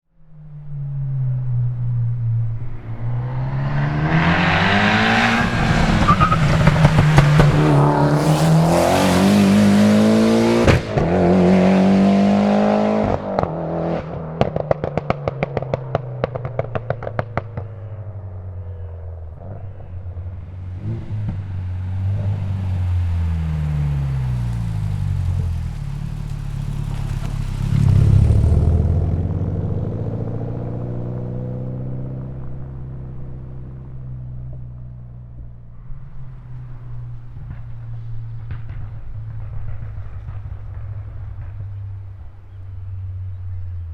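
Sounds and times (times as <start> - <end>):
car engine accelerating hard: 0.7 - 34.8
exhaust pops and crackles: 5.2 - 9.7, 13.0 - 18.4, 19.2 - 30.8, 32.2 - 43.9.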